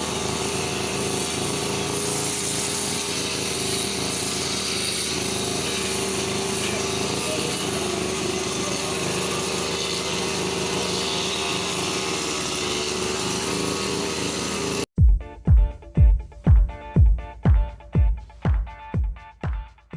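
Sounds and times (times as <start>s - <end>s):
brush cutter engine running: 0.0s - 14.9s
music with heavy beat: 15.0s - 19.9s.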